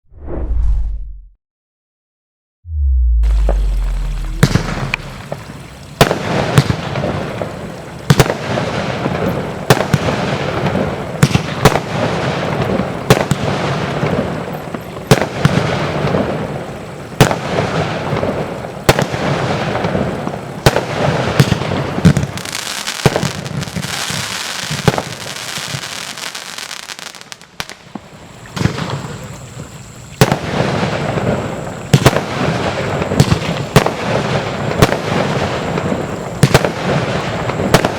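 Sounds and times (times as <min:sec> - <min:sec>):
firework shots and aerial bursts: 0:00.0 - 0:01.3, 0:02.7 - 0:07.1, 0:34.8 - 0:37.9
firework hissing: 0:03.3 - 0:06.7, 0:30.5 - 0:37.9.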